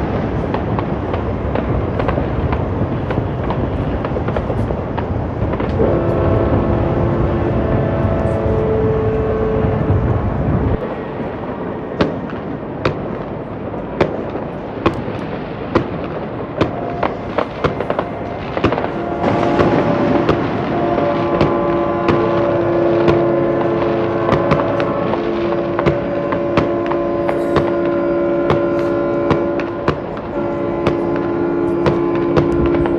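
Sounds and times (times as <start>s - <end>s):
fireworks bangs and crackles: 0.0s - 32.9s
boat horns: 5.3s - 13.2s, 16.0s - 32.9s.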